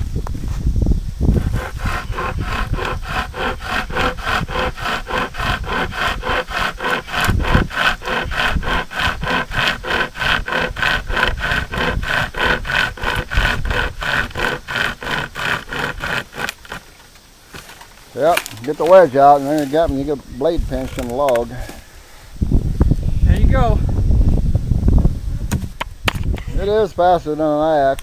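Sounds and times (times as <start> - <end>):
chain saw rasping through wood: 1.3 - 17.0.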